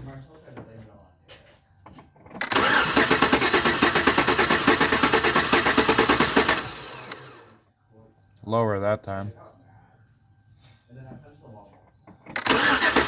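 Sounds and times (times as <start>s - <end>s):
truck engine cranking on starter: 2.2s - 7.6s, 12.2s - 13.0s.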